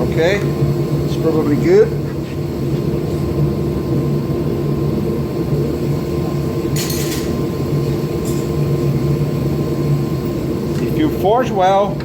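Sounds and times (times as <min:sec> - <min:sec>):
forge droning rumble: 0:00.0 - 0:12.0.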